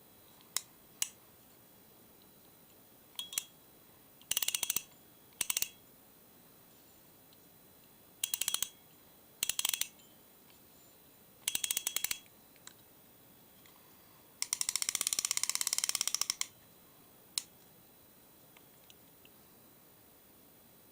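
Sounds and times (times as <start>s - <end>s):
fishing reel ratchet clicking: 4.3s - 4.8s, 5.4s - 5.7s, 8.2s - 8.7s, 9.4s - 9.9s, 11.5s - 12.2s, 14.4s - 16.5s.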